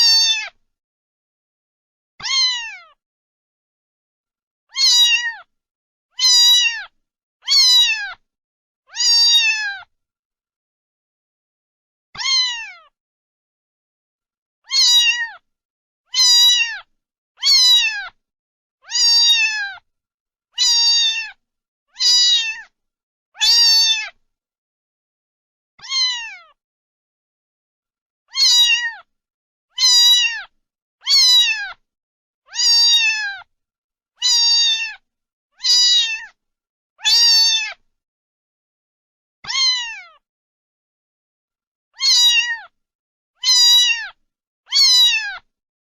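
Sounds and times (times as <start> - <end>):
cat meowing: 0.0 - 0.6, 2.2 - 3.0, 4.7 - 5.5, 6.2 - 8.2, 8.9 - 9.9, 12.2 - 13.0, 14.6 - 15.4, 16.1 - 18.2, 18.8 - 19.8, 20.6 - 21.4, 22.0 - 22.7, 23.4 - 24.2, 25.8 - 26.6, 28.3 - 29.1, 29.7 - 31.8, 32.5 - 33.5, 34.2 - 35.0, 35.6 - 36.4, 37.0 - 37.8, 39.4 - 40.2, 42.0 - 42.8, 43.4 - 45.5.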